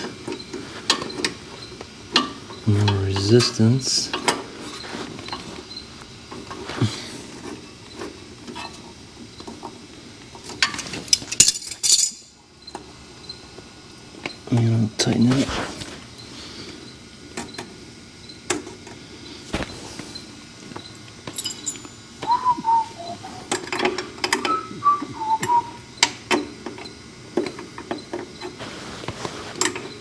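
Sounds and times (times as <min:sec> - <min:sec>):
hand tools clicking on metal: 0:21.2 - 0:24.7
short wavering chirps: 0:22.2 - 0:26.0.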